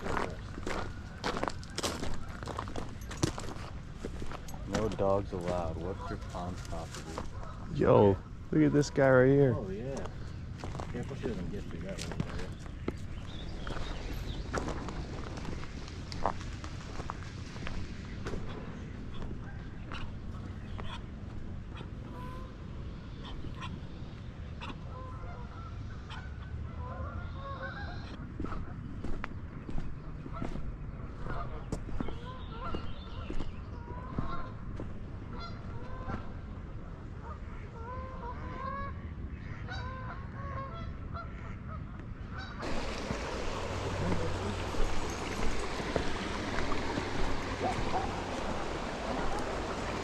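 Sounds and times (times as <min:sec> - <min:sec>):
geese honking: 0:04.3 - 0:12.6, 0:24.6 - 0:28.6, 0:31.2 - 0:34.6, 0:35.3 - 0:36.4, 0:37.2 - 0:50.0
steady rushing noise: 0:42.6 - 0:50.0.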